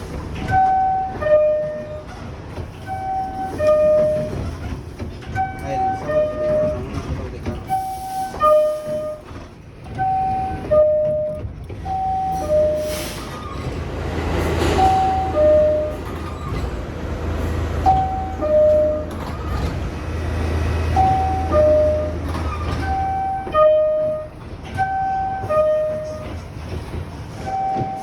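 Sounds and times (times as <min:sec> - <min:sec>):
train low hum: 0:00.0 - 0:28.0
two-tone door chime: 0:00.4 - 0:02.2, 0:02.8 - 0:04.7, 0:05.3 - 0:07.0, 0:10.0 - 0:13.4, 0:14.7 - 0:16.3, 0:17.8 - 0:19.6, 0:20.8 - 0:26.4, 0:27.4 - 0:28.0.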